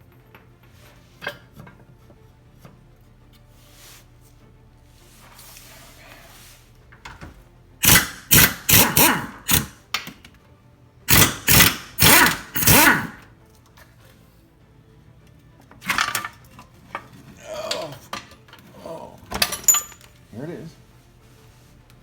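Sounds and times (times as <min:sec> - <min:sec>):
impact wrench bursts: 0:07.8 - 0:09.8, 0:11.1 - 0:13.2.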